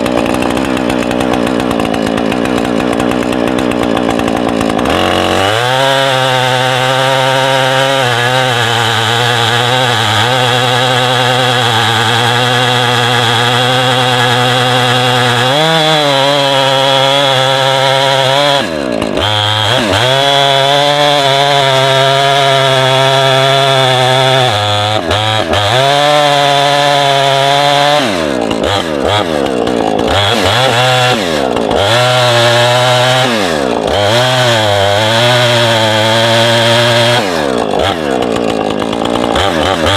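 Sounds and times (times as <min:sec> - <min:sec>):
chainsaw engine milling a log: 0:00.0 - 0:39.9.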